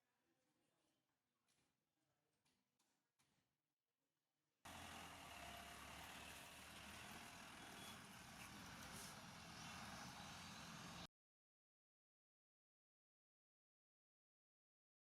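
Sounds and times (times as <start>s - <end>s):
low engine hum: 4.7s - 11.1s.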